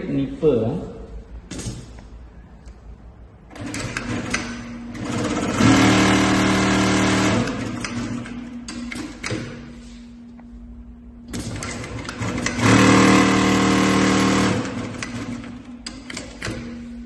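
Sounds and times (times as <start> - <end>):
sewing machine stitching: 3.5 - 9.2, 11.4 - 16.7.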